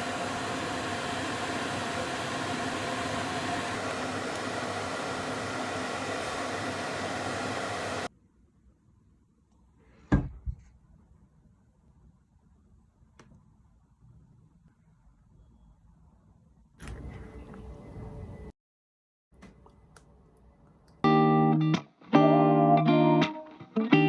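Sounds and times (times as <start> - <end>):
microwave oven humming: 0.0 - 8.1.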